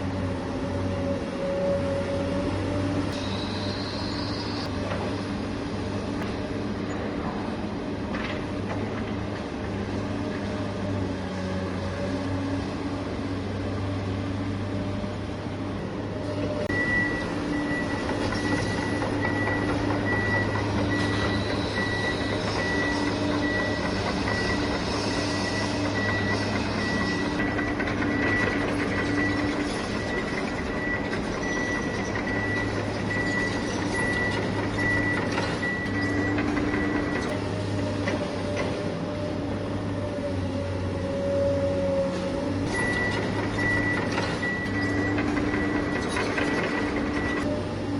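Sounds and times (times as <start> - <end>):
reversing beeper: 16.7 - 37.3, 42.7 - 46.2.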